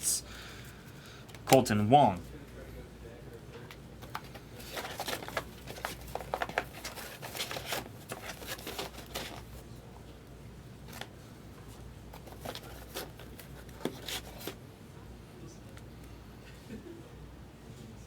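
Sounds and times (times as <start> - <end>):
trading cards rustling: 4.0 - 9.6.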